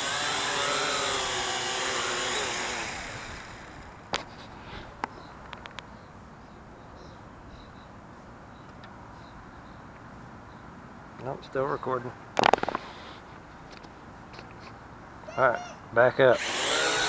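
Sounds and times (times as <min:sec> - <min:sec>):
quadcopter propellers buzzing: 0:00.0 - 0:04.2, 0:16.3 - 0:17.0.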